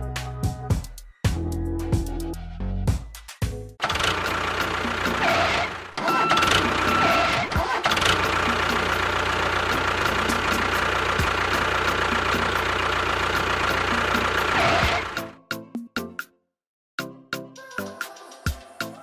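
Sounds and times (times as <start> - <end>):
engine running steadily: 3.8 - 15.2.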